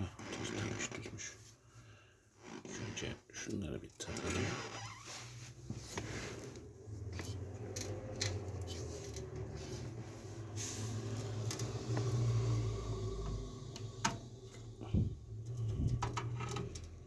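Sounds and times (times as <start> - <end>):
low hum: 6.3 - 16.9
cables and connectors clicking: 7.1 - 9.6, 11.2 - 12.6, 13.2 - 17.0.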